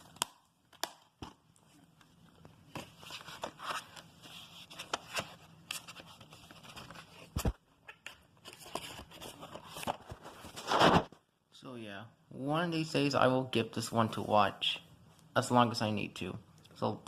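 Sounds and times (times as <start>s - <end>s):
paper rustling and scraping: 8.4s - 11.1s.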